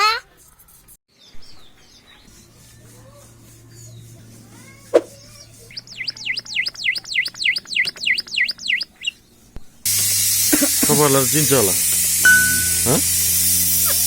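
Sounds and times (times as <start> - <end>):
bird whistling sweeping notes: 5.0 - 5.2.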